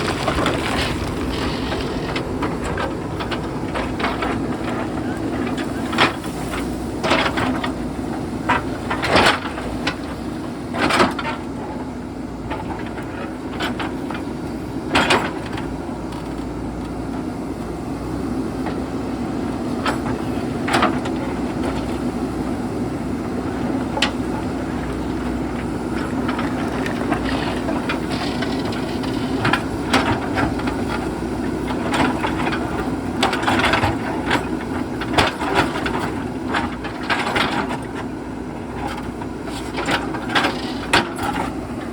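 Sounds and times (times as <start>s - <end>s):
stones knocking against bucket: 0.0s - 6.2s
diesel engine running: 0.0s - 41.9s.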